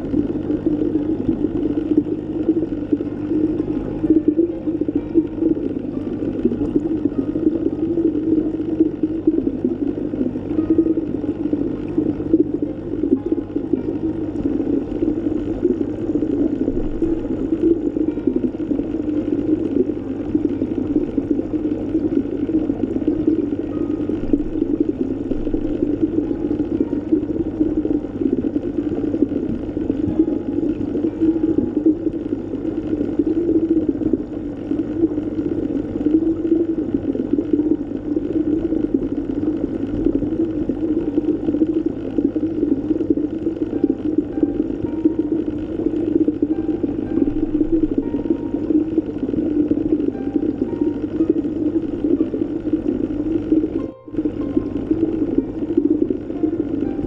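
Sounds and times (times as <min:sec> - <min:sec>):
faint low hum: 0:00.0 - 0:57.0
muffled underwater rush of water: 0:00.0 - 0:57.0.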